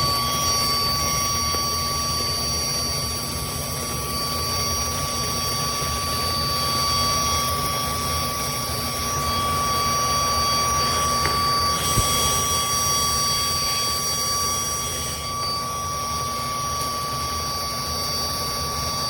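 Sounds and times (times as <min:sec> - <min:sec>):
handheld vacuum cleaner running: 0:00.0 - 0:19.0.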